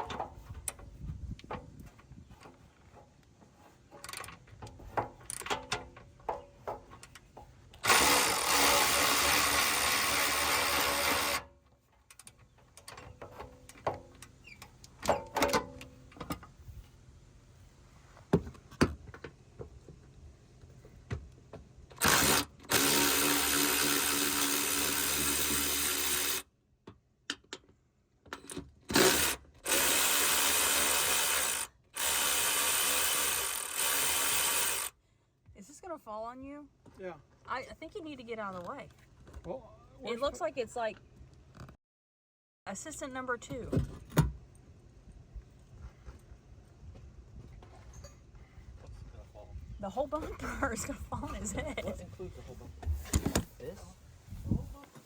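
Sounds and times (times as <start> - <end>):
power tool running: 7.8 - 11.4, 22.0 - 26.4, 28.9 - 34.9.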